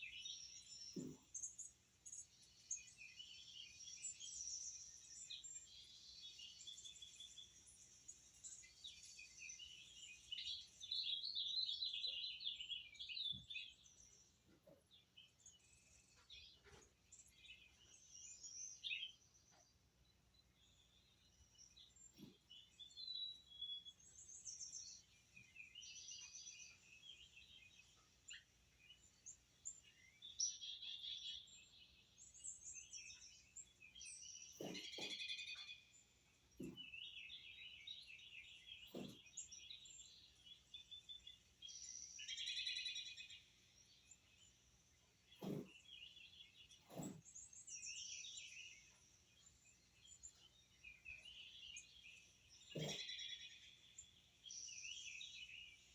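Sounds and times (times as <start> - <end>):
birds chirping and trilling: 0.0 - 55.9.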